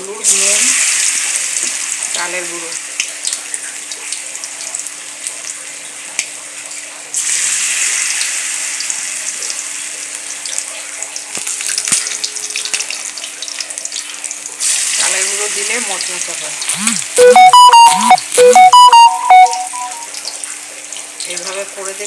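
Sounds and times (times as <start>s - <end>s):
oil sizzling in frying pan: 7.2s - 10.4s.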